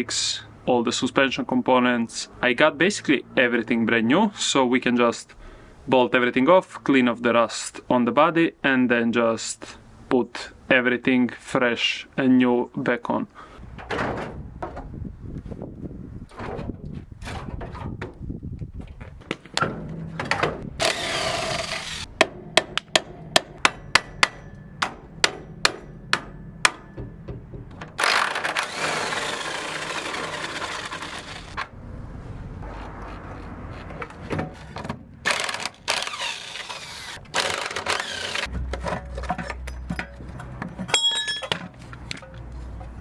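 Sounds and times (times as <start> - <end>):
power tool running: 20.8 - 22.1, 28.0 - 31.6, 35.2 - 38.5
sharp knocks: 22.2 - 28.0.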